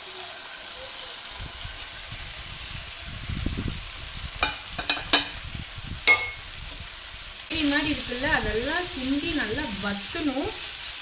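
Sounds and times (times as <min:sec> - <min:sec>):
gravy sizzling in a pan: 0:00.0 - 0:11.0
spoon knocking against a pan: 0:04.4 - 0:05.4, 0:06.0 - 0:06.4.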